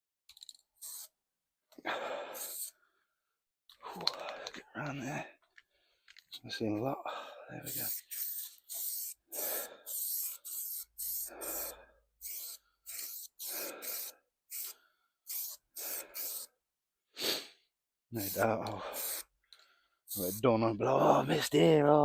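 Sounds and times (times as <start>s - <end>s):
aerosol spray can hissing: 0.8s - 1.2s, 2.4s - 2.8s, 7.6s - 16.5s, 18.2s - 19.3s, 20.1s - 20.5s.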